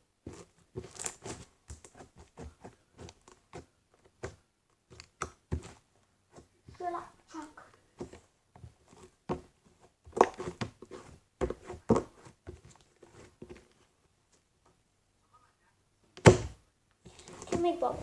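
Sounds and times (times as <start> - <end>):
slime squelching and popping: 10.1 - 10.9.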